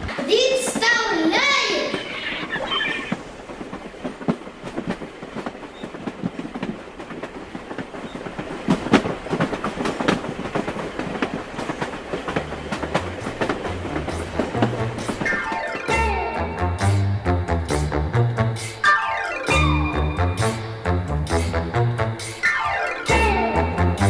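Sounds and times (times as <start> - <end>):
train wheels clattering over rail joints: 0.0 - 2.3, 3.0 - 16.9
low bass notes: 16.3 - 18.6, 19.8 - 22.3.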